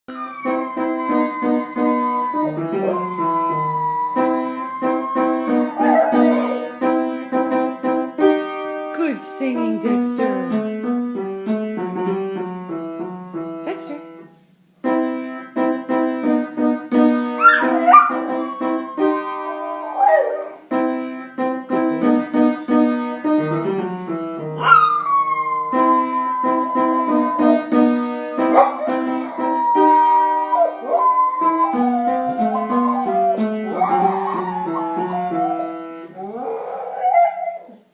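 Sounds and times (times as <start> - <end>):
dog howling: 0.1 - 6.8, 17.4 - 20.6, 24.6 - 27.8, 28.5 - 37.9
piano playing: 0.1 - 37.6.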